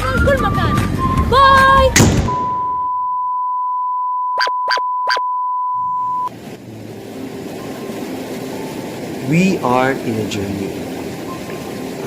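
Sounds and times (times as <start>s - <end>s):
steady electronic beep tone: 2.3s - 6.3s
short electronic blips: 4.2s - 6.3s.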